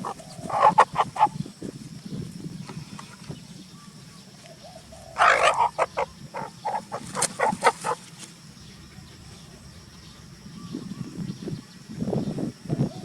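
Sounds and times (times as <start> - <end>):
short sharp animal calls: 0.0 - 1.4, 5.2 - 8.0
low steady background noise: 0.0 - 13.0.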